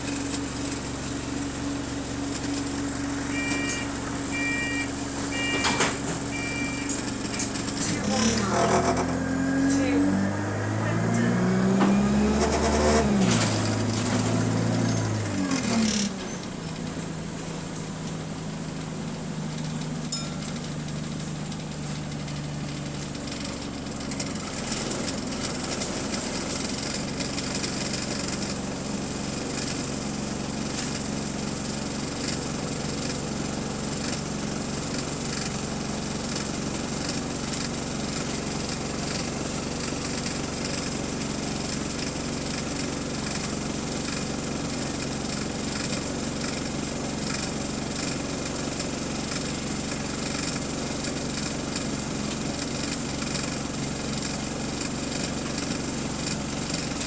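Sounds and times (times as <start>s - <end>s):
bus diesel engine: 0.0s - 57.0s
exhaust leak ticking: 16.5s - 57.0s.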